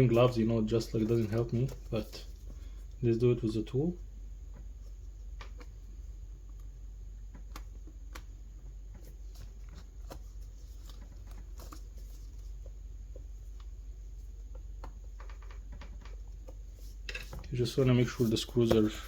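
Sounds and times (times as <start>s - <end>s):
small clicks and light scraping: 7.3s - 13.8s.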